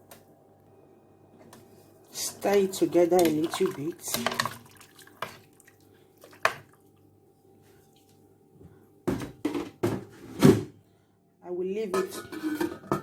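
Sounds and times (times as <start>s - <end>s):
faint steady hum: 0.0s - 13.0s
spoon stirring in a pot: 2.1s - 6.8s.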